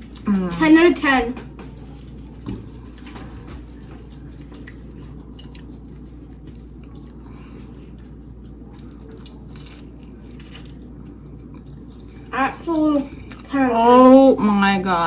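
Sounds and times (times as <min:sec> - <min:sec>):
person chewing: 0:04.0 - 0:12.3, 0:13.2 - 0:13.5.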